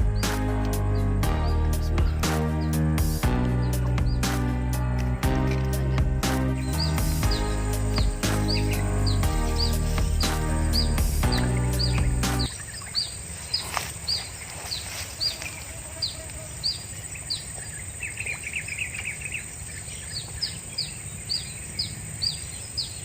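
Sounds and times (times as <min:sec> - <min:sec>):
background music: 0:00.0 - 0:12.5
bird chirping: 0:00.0 - 0:23.0
bird trill: 0:05.7 - 0:15.5.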